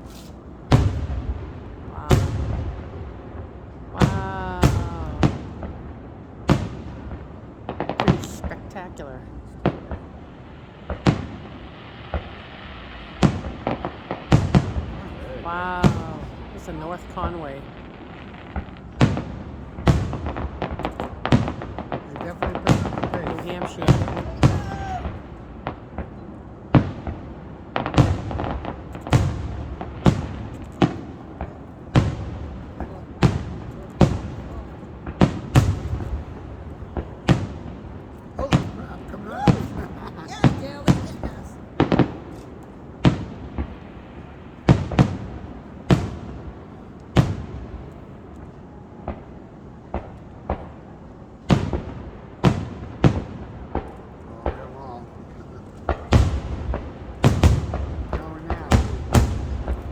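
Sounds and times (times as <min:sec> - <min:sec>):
firework booms with rumble: 0:00.0 - 0:08.7, 0:09.3 - 0:59.9.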